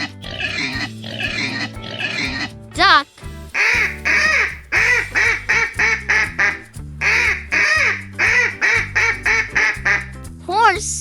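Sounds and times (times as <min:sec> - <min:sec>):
background music: 0:00.0 - 0:11.0
duck quacking: 0:03.6 - 0:10.1.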